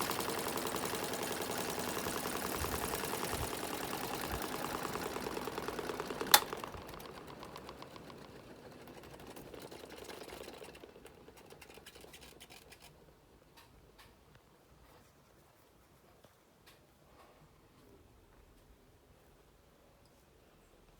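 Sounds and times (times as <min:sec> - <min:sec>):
washing machine running: 0:00.0 - 0:11.1
sharp click: 0:06.3 - 0:06.6.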